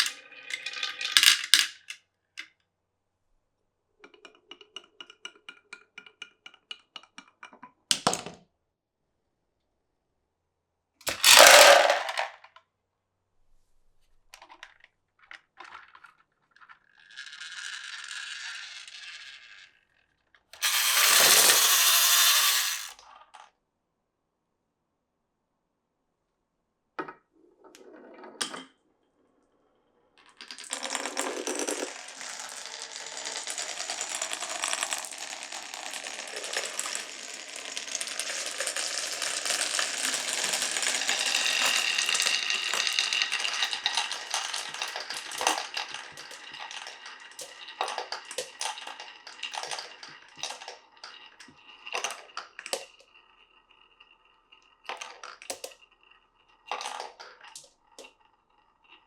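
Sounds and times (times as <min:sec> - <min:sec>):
marbles rattling down wooden run: 0:00.0 - 0:02.0, 0:11.1 - 0:12.4, 0:15.6 - 0:19.8, 0:20.6 - 0:22.9, 0:30.3 - 0:59.0.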